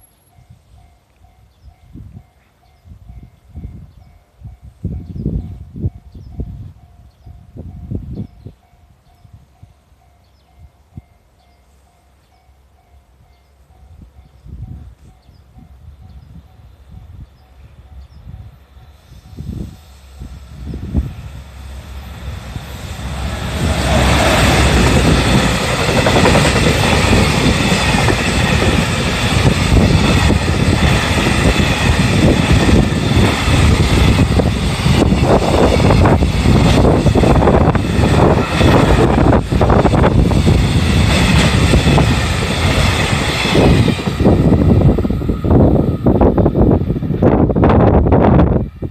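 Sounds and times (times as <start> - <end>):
freight train rumbling past: 0.0 - 48.9
train wheels clattering: 22.1 - 44.7.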